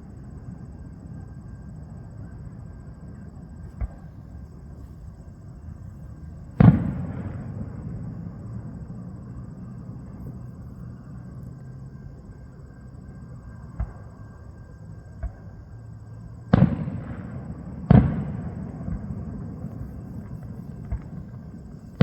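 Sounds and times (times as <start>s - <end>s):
steady low hum: 0.0s - 22.0s
fireworks popping and booming: 3.7s - 4.5s, 6.5s - 8.4s, 16.5s - 22.0s.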